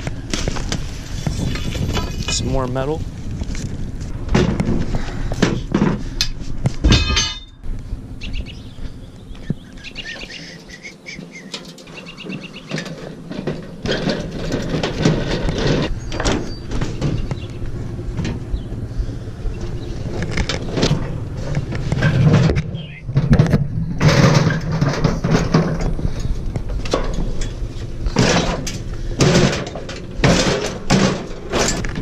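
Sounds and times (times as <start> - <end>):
knocks and clatter: 0.0 - 7.7, 11.2 - 18.7, 19.5 - 32.0
low steady hum: 0.0 - 32.0
birds chirping: 7.7 - 13.8, 14.4 - 21.6, 22.6 - 23.2.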